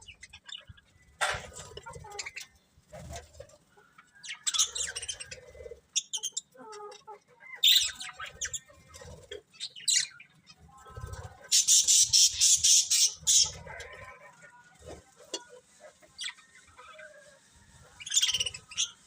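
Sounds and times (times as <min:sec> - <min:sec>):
budgerigars chirping: 0:04.3 - 0:10.3, 0:11.5 - 0:13.8, 0:18.0 - 0:19.0
harsh bird squawks: 0:11.5 - 0:14.0.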